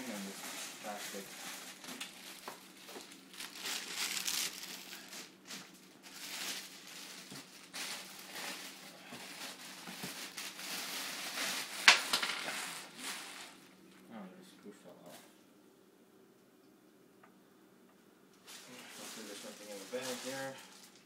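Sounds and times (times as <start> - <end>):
plastic wrapping crinkling: 0.0 - 14.0, 18.4 - 21.0.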